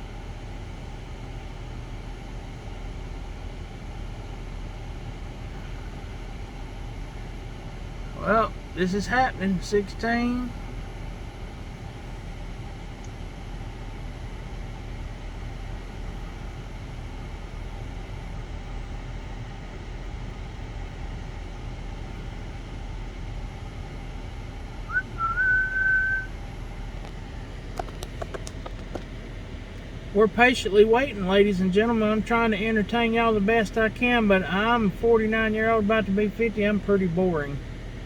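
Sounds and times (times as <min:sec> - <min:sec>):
outdoor background noise: 0:00.0 - 0:38.0
short rising whistle: 0:24.9 - 0:26.3.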